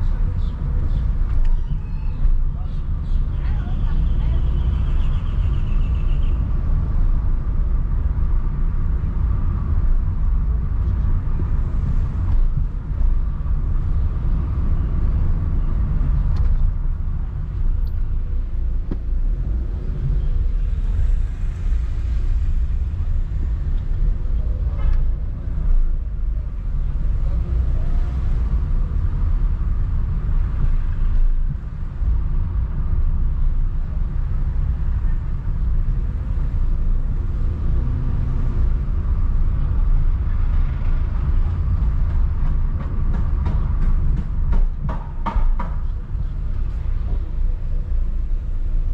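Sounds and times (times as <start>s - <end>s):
car engine and road noise: 0.0s - 48.9s.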